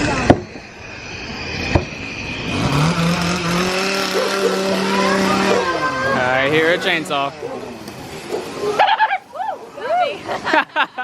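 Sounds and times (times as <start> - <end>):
chainsaw engine revving: 1.1 - 8.8.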